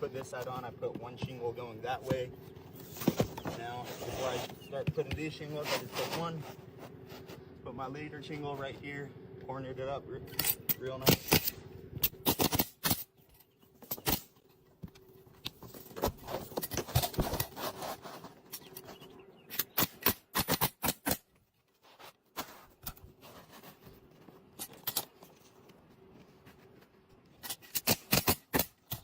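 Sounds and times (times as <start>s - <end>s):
roof shingles scraping and rustling: 2.7s - 4.8s, 5.4s - 7.4s, 15.6s - 19.2s, 21.7s - 29.0s.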